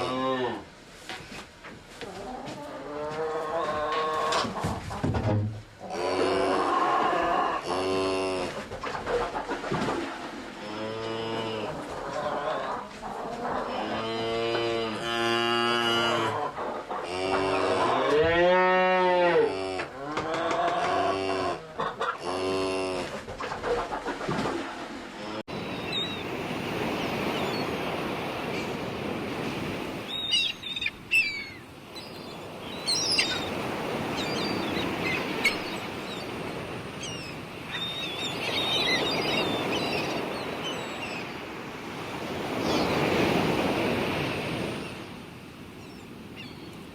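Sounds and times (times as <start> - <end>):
surf washing: 23.7 - 46.9.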